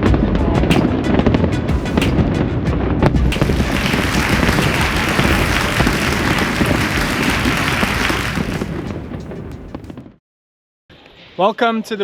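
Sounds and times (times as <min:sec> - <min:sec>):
crowd applauding: 0:03.3 - 0:09.3.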